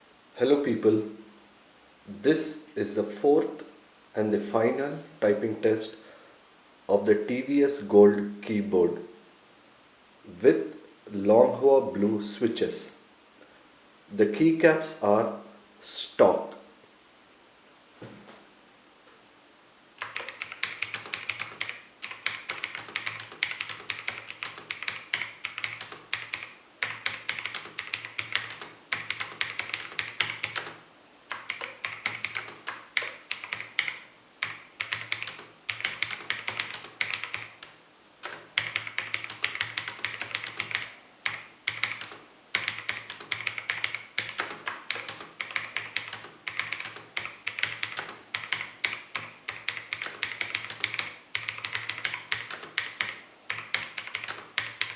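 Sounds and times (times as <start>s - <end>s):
fast mechanical keyboard typing: 20.0s - 54.9s.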